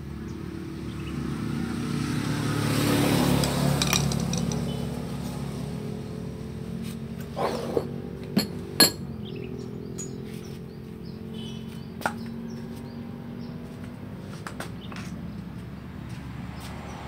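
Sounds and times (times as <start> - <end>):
metal clinks of tools and parts: 3.8 - 4.7, 9.9 - 10.3.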